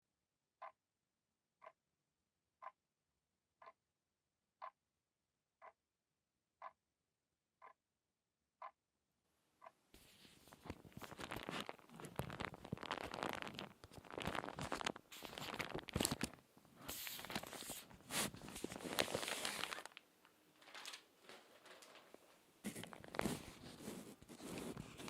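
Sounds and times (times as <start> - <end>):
magazine pages crinkling: 10.0 - 25.0.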